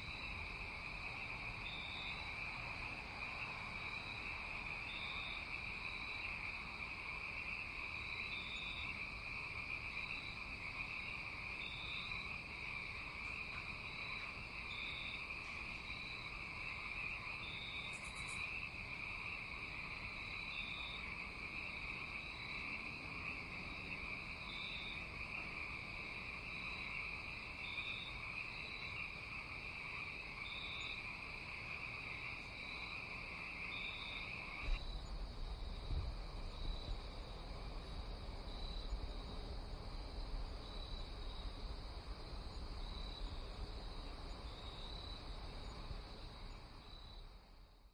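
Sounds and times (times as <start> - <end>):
crickets trilling: 0.0 - 47.9
high insect chirps: 3.3 - 39.4.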